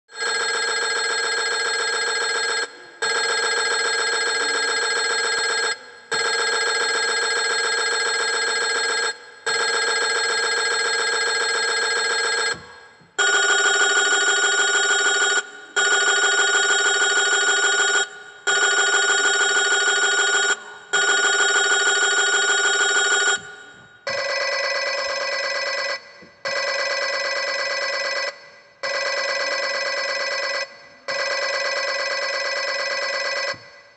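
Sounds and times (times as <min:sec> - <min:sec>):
telephone ringing: 0:13.2 - 0:33.6.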